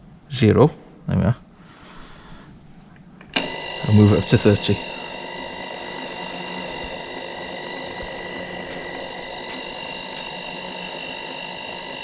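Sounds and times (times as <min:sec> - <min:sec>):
milling machine motor whine: 0:03.3 - 0:12.0.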